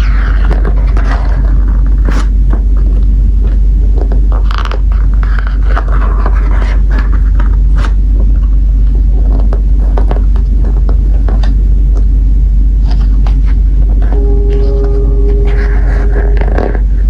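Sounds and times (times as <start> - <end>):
loud low rumble: 14.1 - 17.0.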